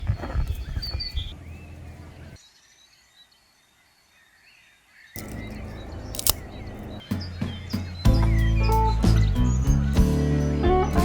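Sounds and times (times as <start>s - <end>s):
birds chirping: 0.0s - 3.5s, 4.1s - 11.0s
outdoor background noise: 0.0s - 11.0s
sharp clicks: 5.2s - 7.1s.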